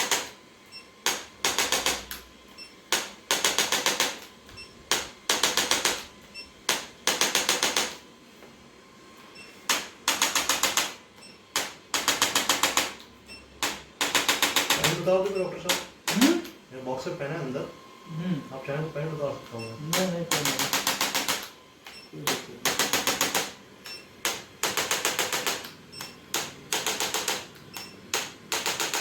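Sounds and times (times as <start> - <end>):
rapid mechanical clicks: 1.0 - 2.2, 2.9 - 4.2, 6.7 - 8.0, 9.7 - 11.0, 11.6 - 13.0, 13.6 - 15.1, 20.3 - 21.6, 22.3 - 29.0.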